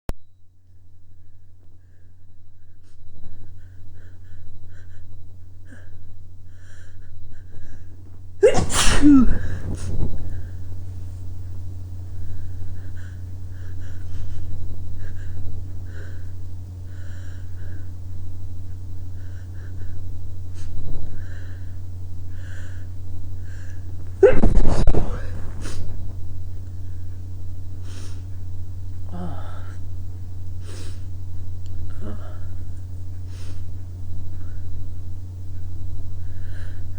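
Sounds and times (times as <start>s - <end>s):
person sneezing: 8.4s - 10.0s, 24.2s - 25.9s.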